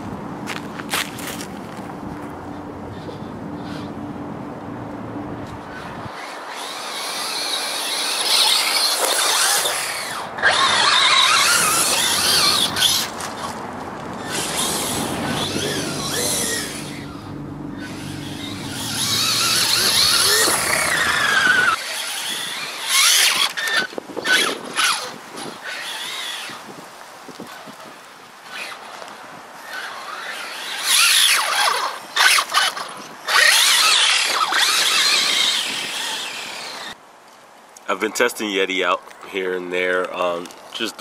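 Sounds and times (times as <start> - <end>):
tyres on ground: 0.0 - 41.0
electric motor whining: 5.4 - 13.6, 14.2 - 26.7, 29.7 - 37.0.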